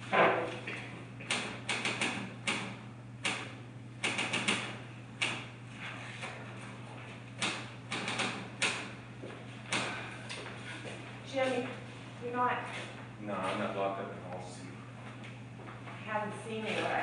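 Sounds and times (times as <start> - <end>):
sharp clicks and knocks: 1.2 - 5.5, 7.4 - 8.9.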